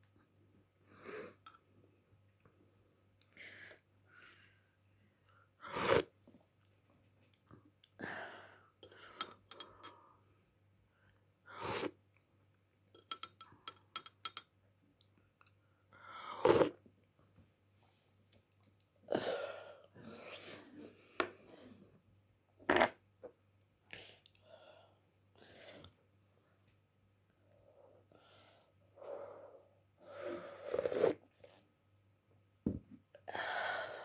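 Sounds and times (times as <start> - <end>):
small clicks and clinks: 13.0 - 14.5.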